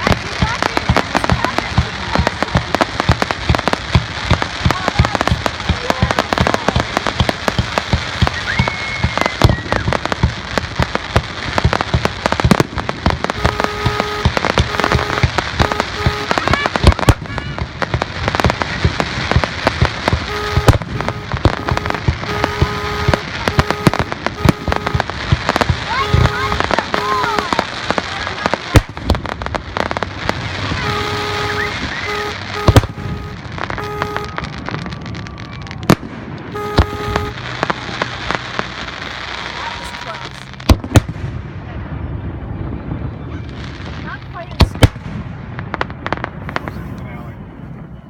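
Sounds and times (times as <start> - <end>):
fireworks cracks and bangs: 0.0 - 47.9
rising firework whistle: 6.1 - 10.2, 13.2 - 17.5, 20.1 - 28.0, 30.2 - 40.5
short two-pitch toots: 13.3 - 16.8, 20.2 - 25.3, 25.9 - 27.6, 30.8 - 34.6, 36.5 - 37.5.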